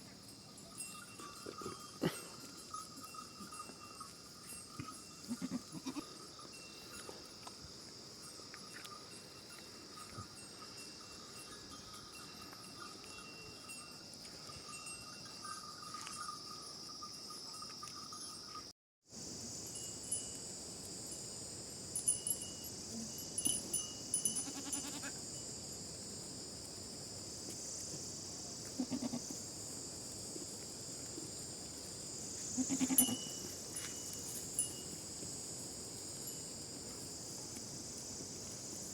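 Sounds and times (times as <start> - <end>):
goats bleating: 5.3 - 6.1, 24.4 - 25.2, 28.8 - 29.3, 32.6 - 33.2
high insect buzz: 27.4 - 29.7, 31.4 - 34.4.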